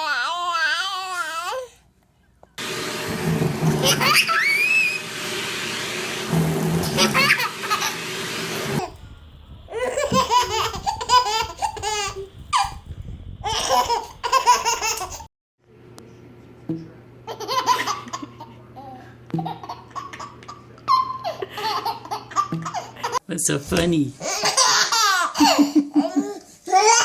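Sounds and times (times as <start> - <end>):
baby laughing: 3.7 - 4.7, 6.8 - 8.2, 9.7 - 12.8, 13.4 - 15.3, 17.3 - 23.2, 24.2 - 27.0
steady low hum: 8.8 - 23.2.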